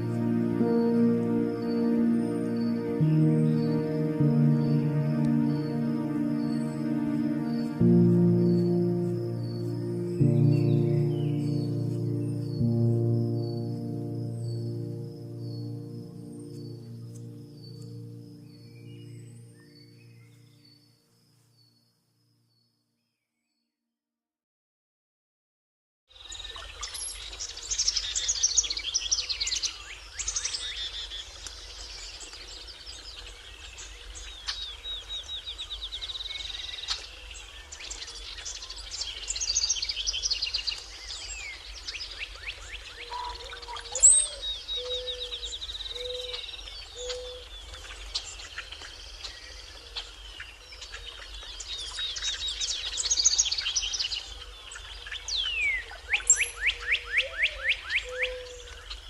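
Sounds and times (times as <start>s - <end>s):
low repeating bird note: 0.0s - 20.4s
birds singing dawn chorus: 0.0s - 21.9s, 26.2s - 59.0s.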